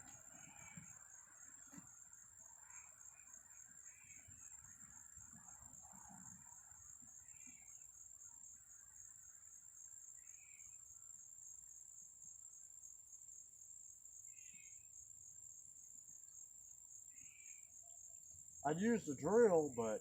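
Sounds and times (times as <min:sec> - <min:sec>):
crickets trilling: 0:00.0 - 0:20.0
faint chirp: 0:10.0 - 0:11.2, 0:14.2 - 0:15.0, 0:17.1 - 0:20.0.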